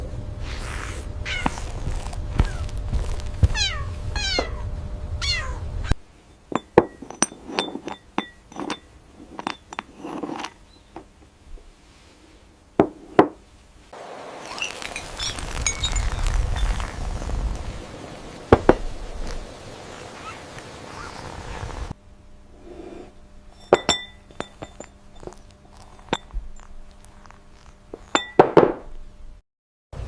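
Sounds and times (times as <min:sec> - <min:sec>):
high short mewing calls: 0:20.0 - 0:21.7.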